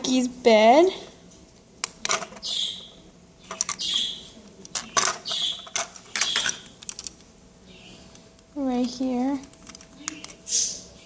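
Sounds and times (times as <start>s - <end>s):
plastic bricks clicking and clattering: 1.8s - 2.4s, 3.5s - 3.8s, 4.6s - 7.2s, 9.4s - 10.4s.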